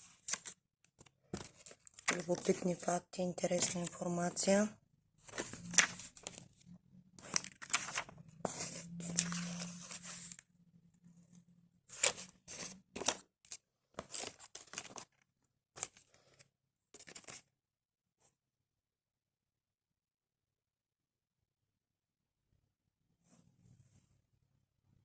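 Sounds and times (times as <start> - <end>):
paper rustling and crinkling: 0.0 - 2.9, 3.5 - 4.0, 5.3 - 6.4, 7.2 - 10.4, 11.9 - 15.2, 17.0 - 17.4.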